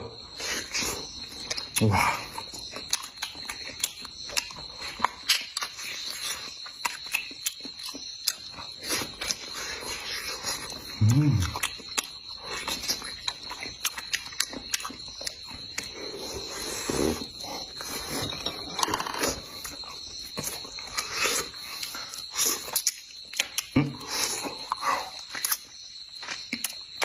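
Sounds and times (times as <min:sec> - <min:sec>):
person chewing with wet smacks: 0:00.4 - 0:27.0
person grunting: 0:11.0 - 0:11.5.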